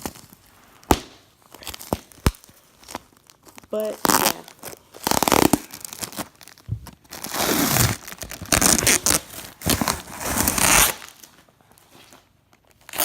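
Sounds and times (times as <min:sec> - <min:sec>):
packaging crinkling and tearing: 0:01.5 - 0:11.4.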